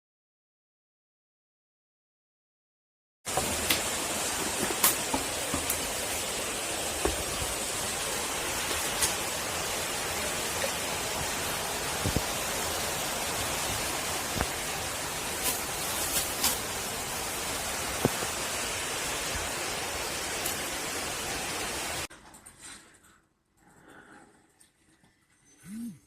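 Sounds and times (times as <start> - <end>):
high-pressure water spraying: 3.3 - 22.1.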